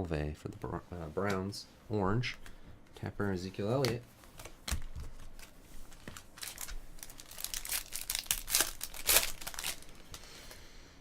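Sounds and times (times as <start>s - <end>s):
plastic and card crinkling: 3.2s - 10.2s.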